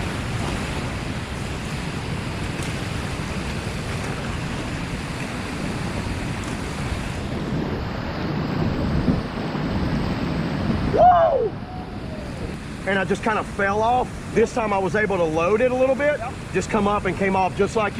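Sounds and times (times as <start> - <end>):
whitewater rushing in river rapid: 0.0 - 17.9.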